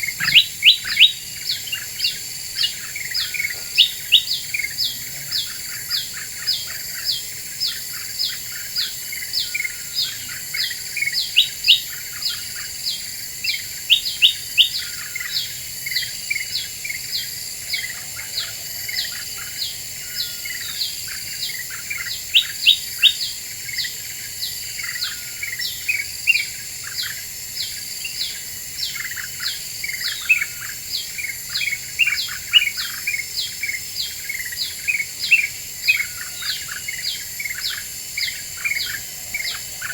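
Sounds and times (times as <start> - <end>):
bird chirping rapidly: 0.0 - 4.6.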